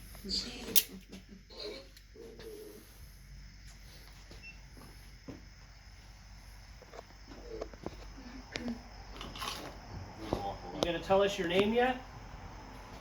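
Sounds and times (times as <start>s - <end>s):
soft murmurs: 0.1s - 3.2s.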